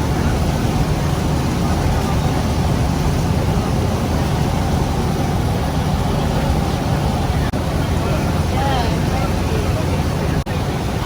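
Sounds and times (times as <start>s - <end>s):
boat engines droning: 0.0s - 11.0s.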